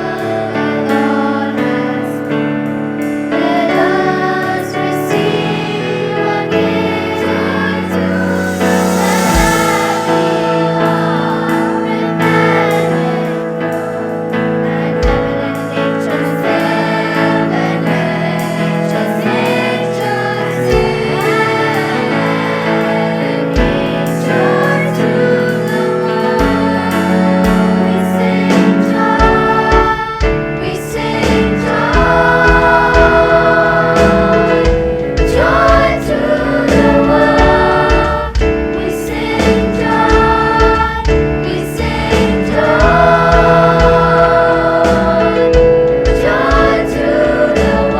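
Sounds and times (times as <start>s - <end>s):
choir singing: 0.0s - 47.9s
musical accompaniment: 0.0s - 47.9s
low beat: 8.0s - 12.6s.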